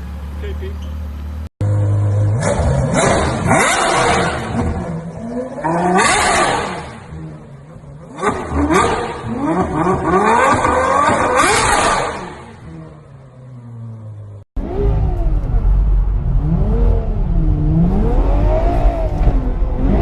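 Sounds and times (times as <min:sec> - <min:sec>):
car engine revving hard: 0:01.6 - 0:13.0, 0:16.4 - 0:20.0.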